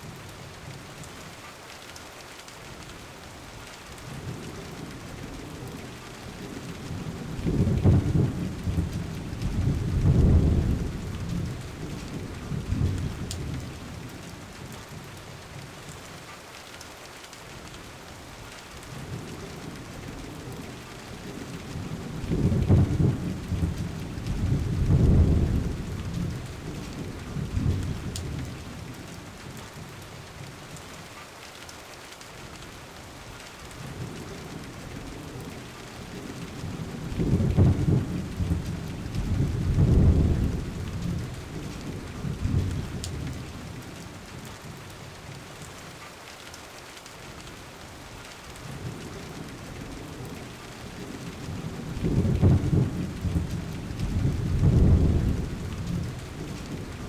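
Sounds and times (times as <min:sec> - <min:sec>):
steady rain: 0:00.0 - 0:57.0
thunder rumbling: 0:06.5 - 0:14.1, 0:19.1 - 0:29.0, 0:34.0 - 0:43.8, 0:48.8 - 0:57.0.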